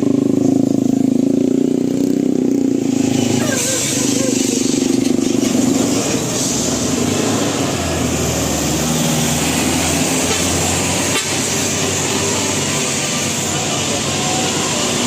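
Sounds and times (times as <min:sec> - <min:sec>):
bus engine running: 0:00.0 - 0:15.0.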